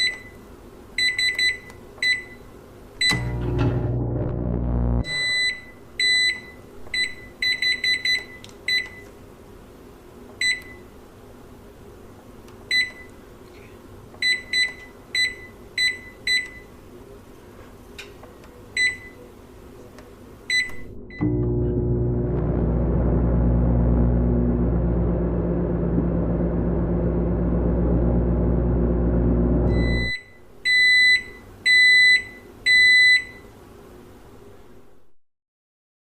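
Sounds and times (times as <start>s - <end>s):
microwave oven hum: 0.0s - 11.1s, 20.5s - 33.6s.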